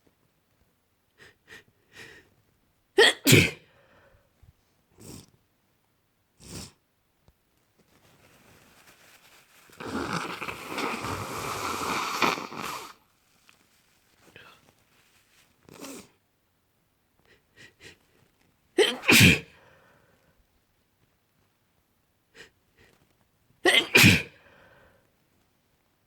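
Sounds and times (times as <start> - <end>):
person sneezing: 3.0 - 3.7, 9.8 - 13.0, 18.8 - 19.6, 23.7 - 24.4
short sniffs: 8.8 - 13.0.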